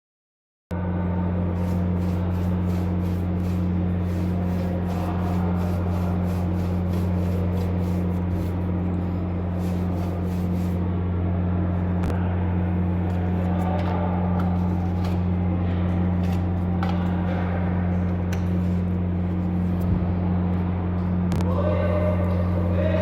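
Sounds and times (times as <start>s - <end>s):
steady low hum: 0.7s - 23.0s
tool scraping over drywall: 1.4s - 10.9s.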